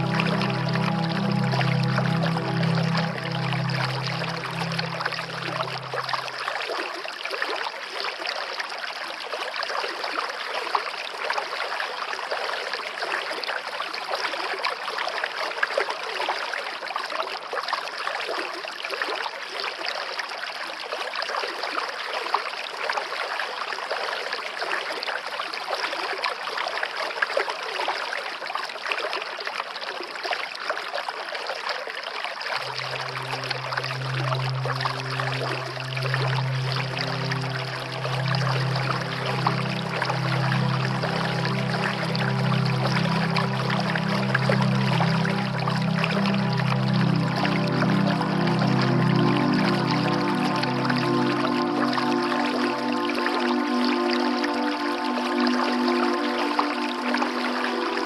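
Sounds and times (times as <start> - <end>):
soft music with low notes: 0.0 - 6.8, 32.6 - 58.0
forest stream flowing: 0.0 - 58.0.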